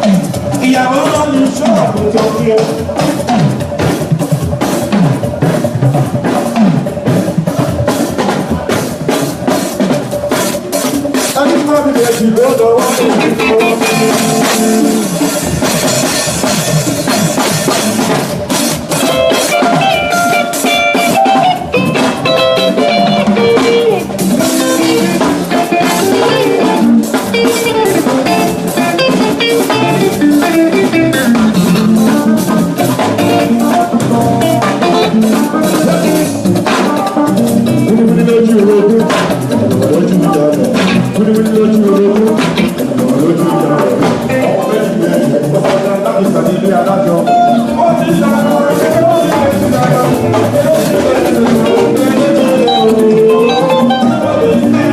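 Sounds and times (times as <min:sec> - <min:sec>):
drum kit: 0:00.0 - 0:54.9
guitar melody: 0:12.2 - 0:45.3, 0:46.0 - 0:54.9.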